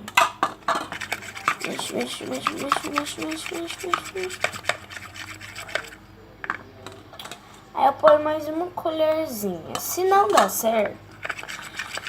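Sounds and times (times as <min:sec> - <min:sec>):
spoon scraping thick mixture: 0:00.7 - 0:06.0, 0:11.1 - 0:12.0.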